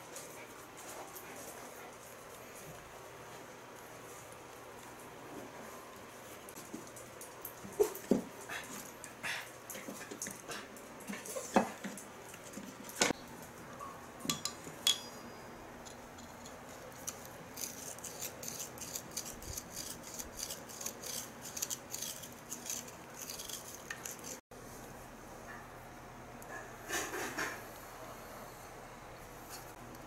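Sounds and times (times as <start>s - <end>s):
sharp knocks and clinks: 13.8s - 16.6s.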